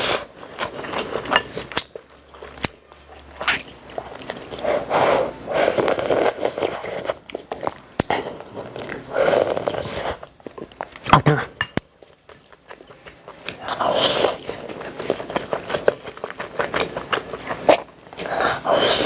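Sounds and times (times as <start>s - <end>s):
person biting and chewing food: 0.0s - 19.0s.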